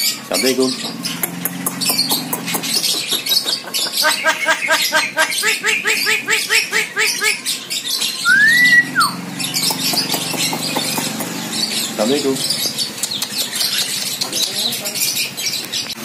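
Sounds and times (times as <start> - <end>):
bird harsh repeated notes: 0.0 - 14.3
bird clicking chatter: 0.8 - 4.4, 9.6 - 11.8, 12.6 - 16.0
bird whistle rising and falling: 8.2 - 9.7.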